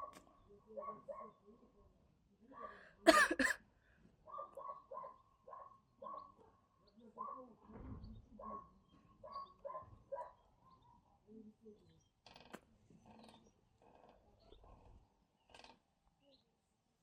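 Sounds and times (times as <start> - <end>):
woman coughing: 3.0 - 3.6.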